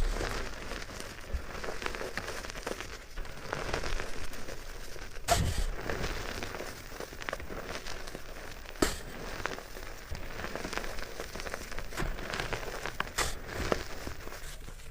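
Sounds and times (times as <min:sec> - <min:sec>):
soft material crackling: 0:00.0 - 0:14.9.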